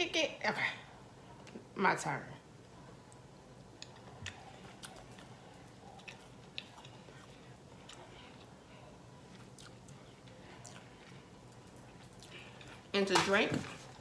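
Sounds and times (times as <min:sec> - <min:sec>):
low steady hum: 0:00.0 - 0:14.0
person chewing meat: 0:03.8 - 0:12.8.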